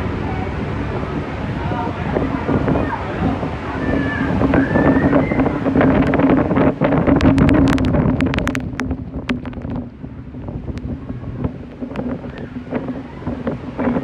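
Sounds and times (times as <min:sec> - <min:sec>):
ferry engine drone: 0:00.0 - 0:14.0
wind buffeting microphone: 0:00.0 - 0:14.0
sharp clicks and ticks: 0:06.9 - 0:10.0.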